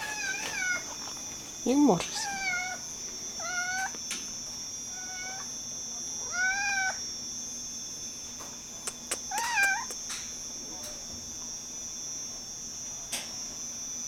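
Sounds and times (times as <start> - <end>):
cat meowing: 0.0 - 0.8, 2.2 - 2.8, 3.4 - 4.0, 4.9 - 5.5, 6.2 - 7.0, 9.3 - 9.9.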